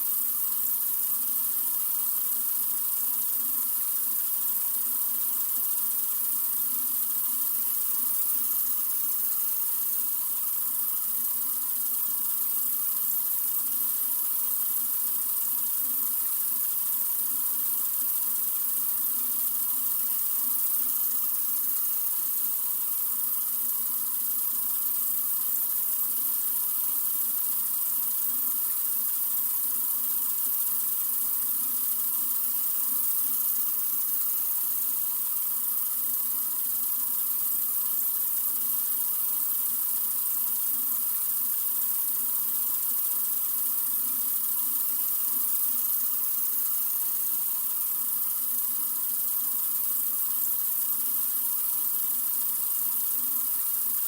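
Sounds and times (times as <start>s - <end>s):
sink faucet running: 0.0s - 54.0s.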